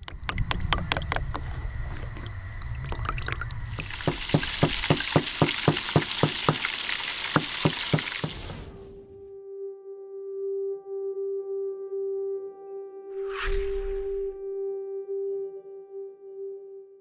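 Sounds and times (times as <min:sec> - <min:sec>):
oil popping: 0:00.0 - 0:08.5
oil sizzling: 0:00.0 - 0:08.6.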